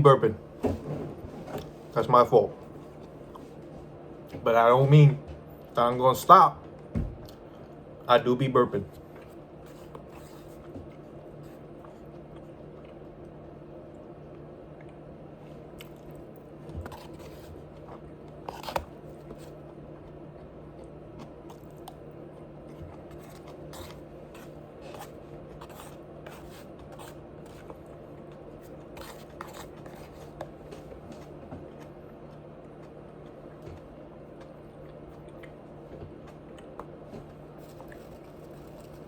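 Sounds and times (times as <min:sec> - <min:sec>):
steady low hum: 0:00.0 - 0:39.0
person chewing crunchy food: 0:14.3 - 0:39.0.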